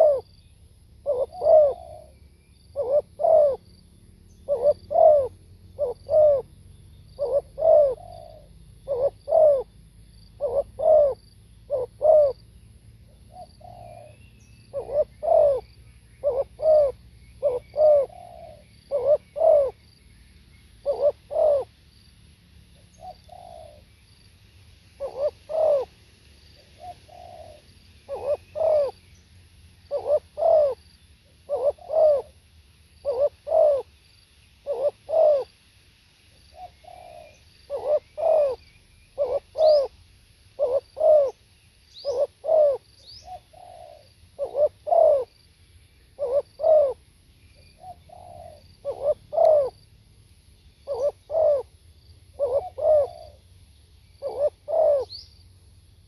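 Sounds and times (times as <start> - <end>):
dove cooing: 0.0 - 0.3, 1.0 - 3.7, 4.3 - 6.6, 7.2 - 12.4, 13.1 - 19.8, 20.8 - 21.8, 22.8 - 23.9, 25.0 - 26.0, 26.6 - 29.1, 29.9 - 32.4, 33.0 - 34.0, 34.6 - 35.6, 36.5 - 41.4, 42.0 - 45.4, 46.1 - 47.0, 47.6 - 49.9, 50.8 - 51.7, 52.3 - 53.4, 54.2 - 55.2.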